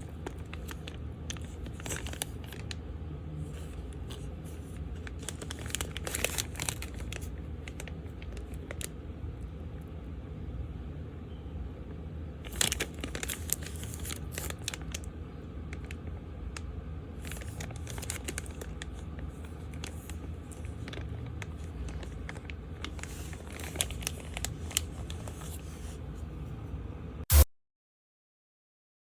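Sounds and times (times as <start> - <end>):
crinkling material: 0.0 - 2.8, 3.4 - 9.0, 12.4 - 16.1, 17.2 - 26.2
steady low hum: 0.0 - 27.5.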